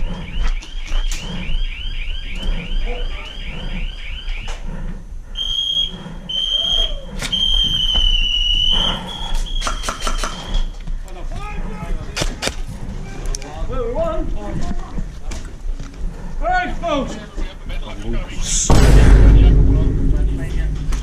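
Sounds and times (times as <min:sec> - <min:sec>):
rapid rising electronic chirps: 0:00.0 - 0:04.5
long steady high beep: 0:00.0 - 0:04.6.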